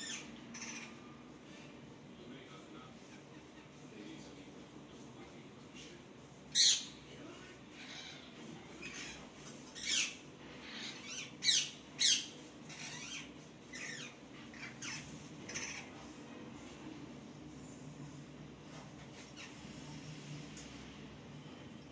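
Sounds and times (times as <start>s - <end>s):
soft parrot chirps: 0.0s - 1.1s, 7.8s - 16.0s
parrot squawking: 0.0s - 1.2s, 6.5s - 7.0s, 7.7s - 16.1s, 19.2s - 19.6s.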